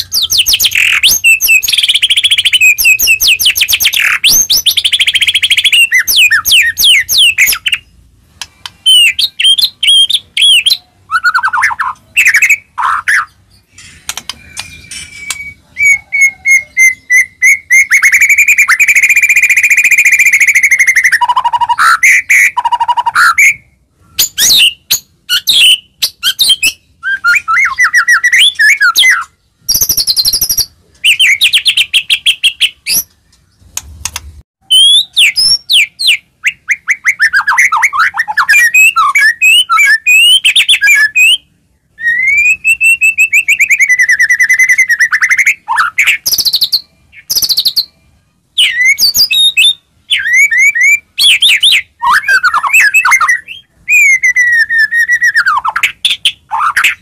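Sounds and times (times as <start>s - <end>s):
bird singing whistled phrases and trills: 0.0s - 33.6s, 34.6s - 57.0s.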